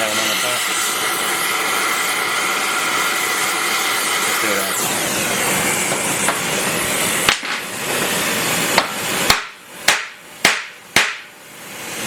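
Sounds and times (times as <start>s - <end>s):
torch hissing: 0.0s - 12.0s.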